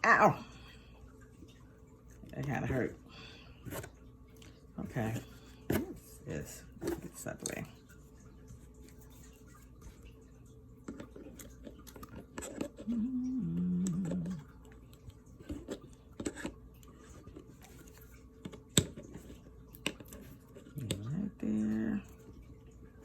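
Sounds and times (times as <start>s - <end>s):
person humming: 12.8s - 14.5s.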